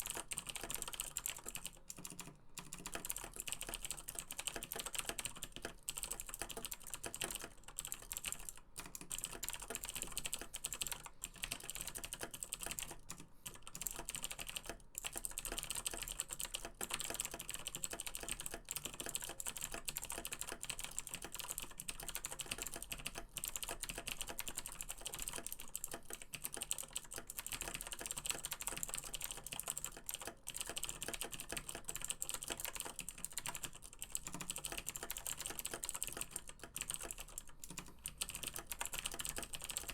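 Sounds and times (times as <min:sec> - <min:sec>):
fast typing on mechanical keyboard: 0:00.0 - 0:39.9.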